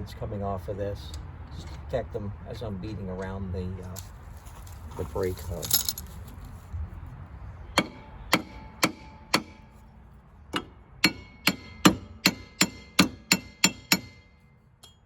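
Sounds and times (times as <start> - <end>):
hammer striking metal hub: 7.8 - 9.7, 10.5 - 15.0.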